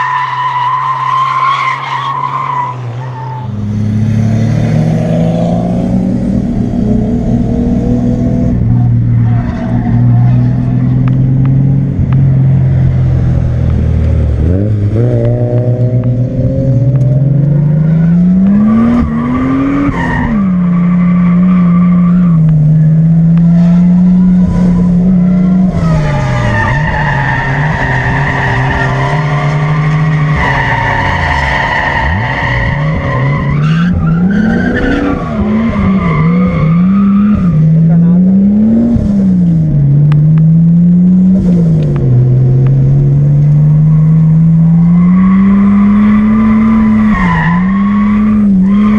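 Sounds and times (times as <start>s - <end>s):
car engine revving: 0.0s - 48.9s.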